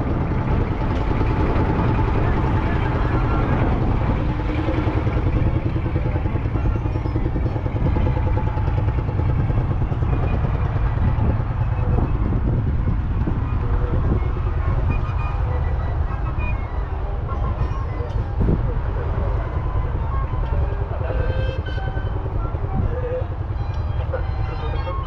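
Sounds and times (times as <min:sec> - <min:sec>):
diesel engine running: 0:00.0 - 0:25.0.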